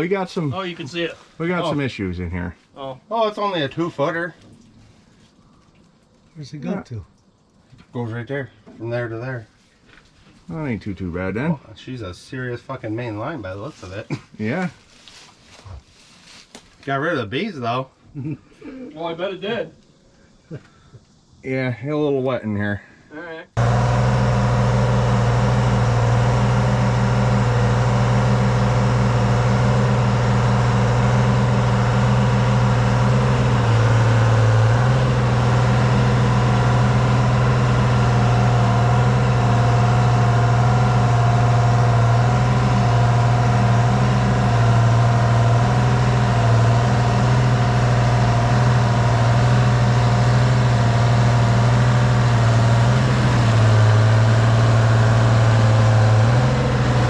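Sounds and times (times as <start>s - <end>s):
diesel engine idling: 23.6s - 57.0s.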